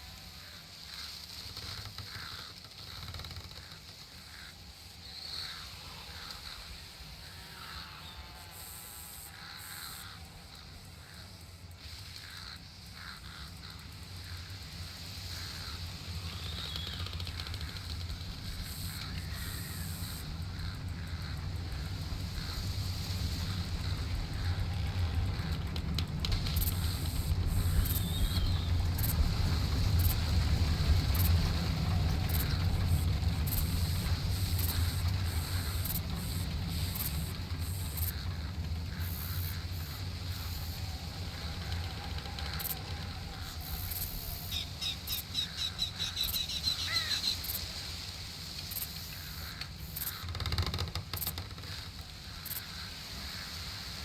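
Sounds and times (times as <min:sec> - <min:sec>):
low wind rumble: 0:03.6 - 0:50.6
faint clicks: 0:15.3 - 0:44.5, 0:45.1 - 0:52.8.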